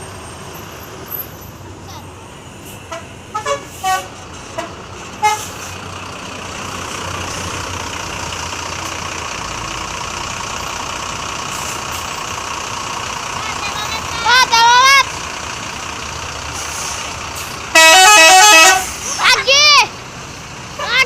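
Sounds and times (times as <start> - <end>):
heavy traffic passing: 0.0 - 21.0
vehicle horn toots: 2.9 - 5.5, 17.7 - 18.9.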